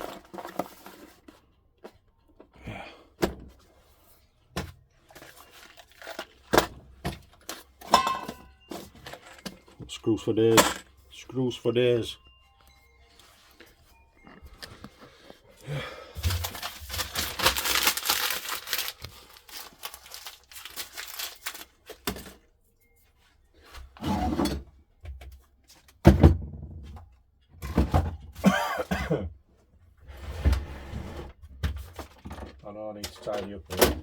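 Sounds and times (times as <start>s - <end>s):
objects rattling and clattering: 0.0s - 2.5s, 3.2s - 11.2s, 16.1s - 22.4s, 25.8s - 28.8s, 31.3s - 34.0s.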